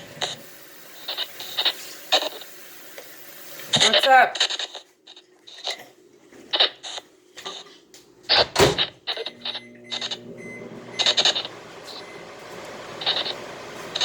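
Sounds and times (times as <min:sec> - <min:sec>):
hiss: 0:00.0 - 0:03.8
choppy bursts of static: 0:00.0 - 0:04.9, 0:06.5 - 0:07.1, 0:08.3 - 0:14.0.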